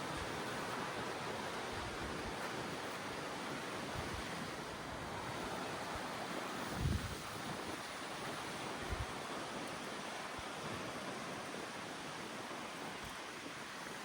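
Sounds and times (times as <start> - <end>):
wind rushing across microphone: 3.9 - 8.1.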